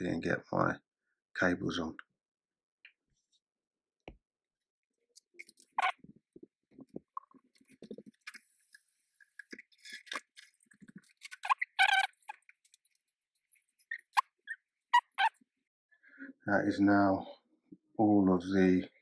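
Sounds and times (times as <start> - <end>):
brief squeak: 5.4 - 6.0.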